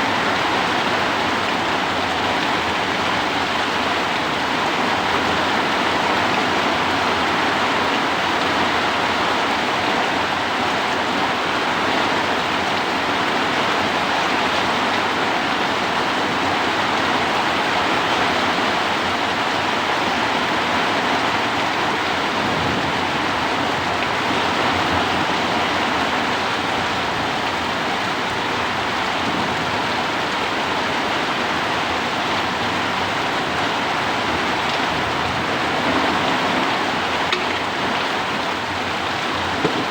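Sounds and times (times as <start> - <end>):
heavy rain falling: 0.0 - 39.9
strong wind: 21.3 - 39.9.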